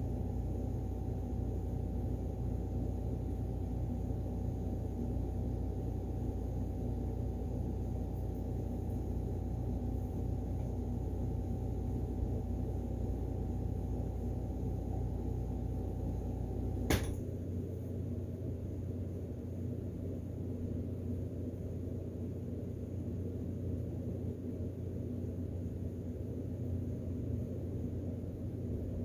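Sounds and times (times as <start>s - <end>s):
electrical hum of appliance: 0.0s - 29.0s
appliance switch click: 16.9s - 17.3s.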